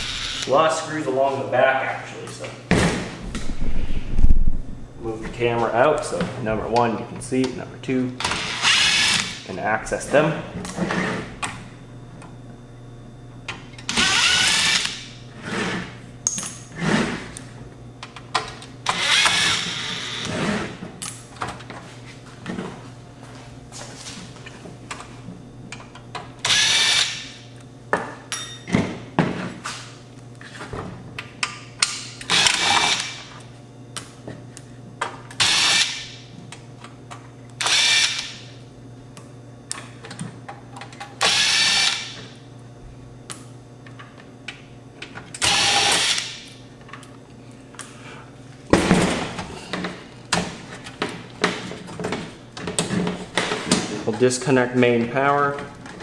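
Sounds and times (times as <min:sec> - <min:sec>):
cordless drill running: 0:00.0 - 0:00.5, 0:08.3 - 0:09.3, 0:13.9 - 0:15.0, 0:18.9 - 0:20.4, 0:26.4 - 0:27.2, 0:37.6 - 0:38.3, 0:41.2 - 0:42.2, 0:45.4 - 0:46.3.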